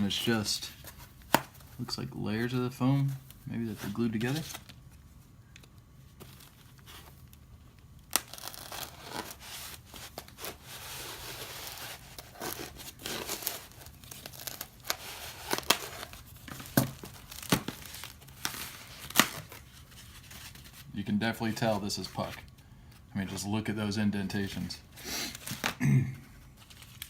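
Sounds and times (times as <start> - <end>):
packing foam tearing and rustling: 8.1 - 20.9.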